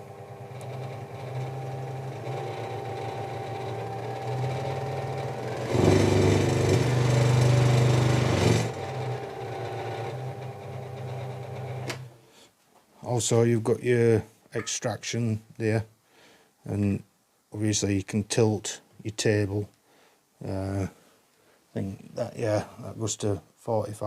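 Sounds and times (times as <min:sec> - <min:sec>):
scroll saw running: 0:00.4 - 0:12.0.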